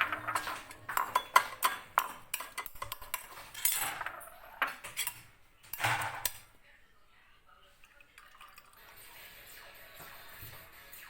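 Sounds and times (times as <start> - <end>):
spoon clinking against bowl: 0.0 - 6.4.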